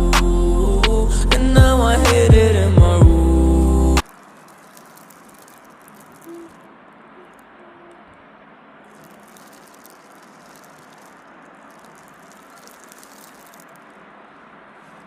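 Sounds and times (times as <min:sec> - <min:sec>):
faint crackling: 0:04.0 - 0:15.0
soft low hoot: 0:06.2 - 0:08.1
steady hiss: 0:08.8 - 0:15.0.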